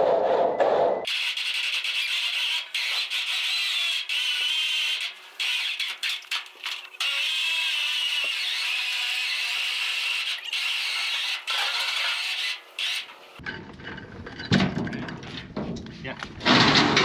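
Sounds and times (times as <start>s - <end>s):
electric winch motor whining: 1.1s - 13.4s.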